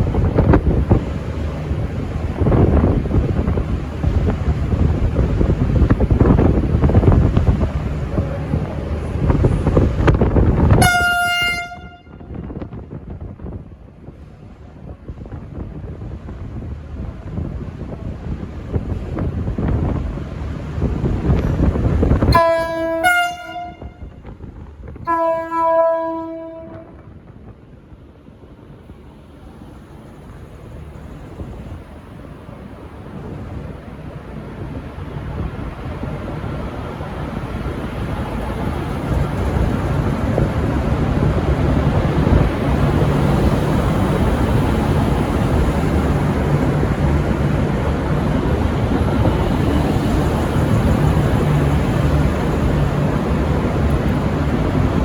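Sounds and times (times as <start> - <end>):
wind on microphone: 0.0 - 29.0, 29.9 - 55.0
diesel train engine rumble: 0.0 - 55.0
train horn blasts: 10.7 - 12.5, 22.2 - 24.3, 25.0 - 27.2.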